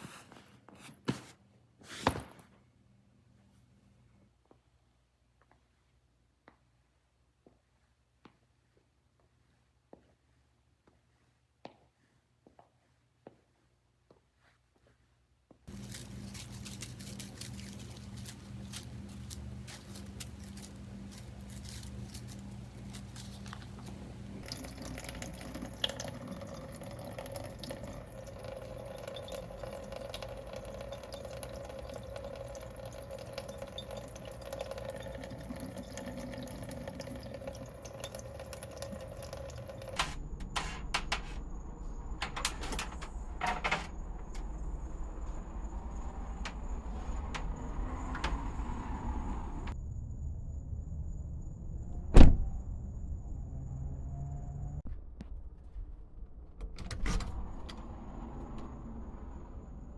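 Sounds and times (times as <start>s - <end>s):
running water: 15.7s - 40.0s
water drips and clicks: 24.4s - 40.0s.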